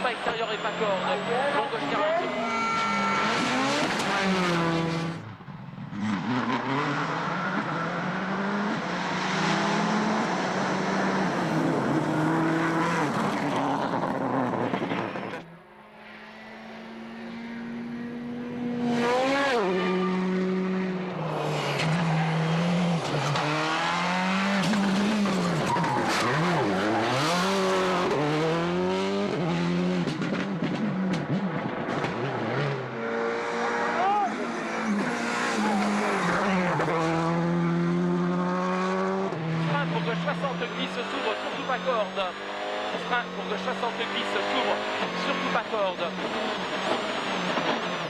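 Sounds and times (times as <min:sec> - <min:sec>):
rally car engine running hard: 0:16.6 - 0:48.0.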